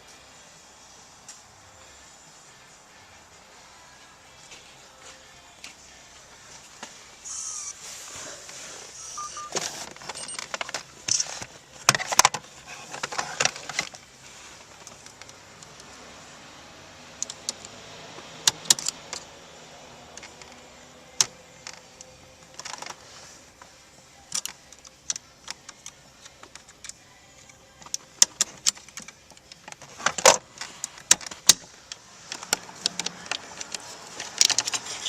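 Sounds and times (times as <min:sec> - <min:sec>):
metal tools clinking and rattling: 0:09.4 - 0:12.1.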